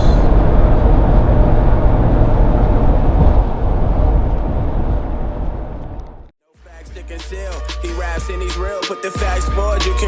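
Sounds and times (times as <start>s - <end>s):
wind noise: 0.0s - 6.3s
engine and tyre drone: 0.0s - 8.2s.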